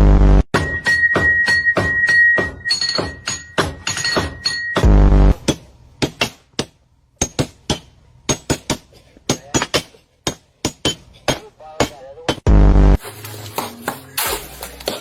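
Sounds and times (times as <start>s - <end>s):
sharp taps with clinking ring: 2.7s - 4.8s.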